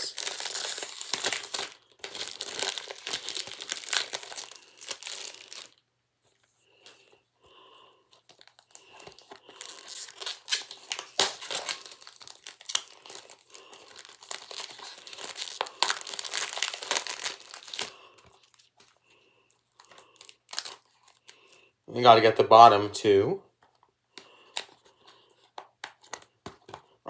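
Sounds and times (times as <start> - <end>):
plastic wrapping tearing and crinkling: 0.0 - 5.8, 8.3 - 19.0, 19.6 - 21.5.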